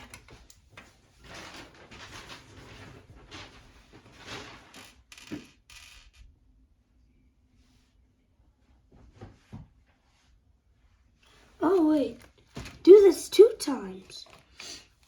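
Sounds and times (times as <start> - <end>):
plastic parts rustling: 0.0 - 5.4.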